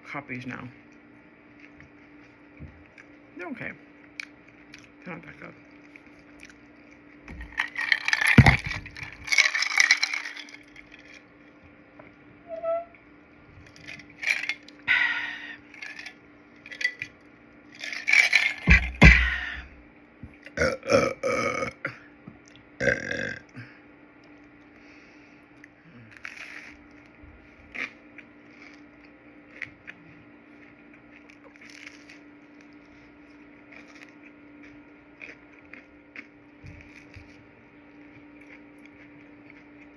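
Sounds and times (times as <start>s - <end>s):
steady low hum: 0.0s - 39.9s
chewing with mouth clicks: 0.8s - 8.4s, 25.6s - 39.9s
person burping: 20.5s - 22.1s, 22.8s - 23.7s.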